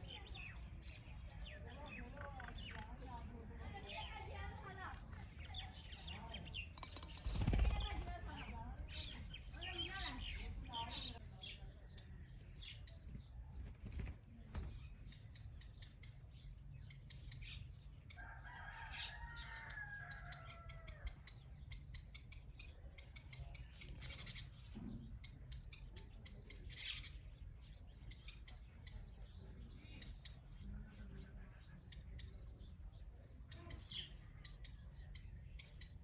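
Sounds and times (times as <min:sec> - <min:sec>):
rooster crowing: 0:18.2 - 0:21.0.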